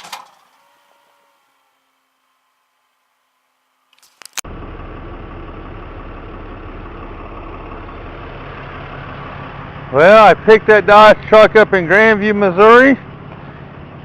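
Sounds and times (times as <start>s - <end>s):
truck engine running: 4.4s - 14.0s.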